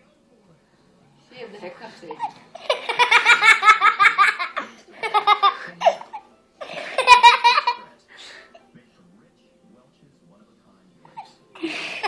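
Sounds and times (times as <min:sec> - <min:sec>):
child laughing: 0:06.7 - 0:07.8.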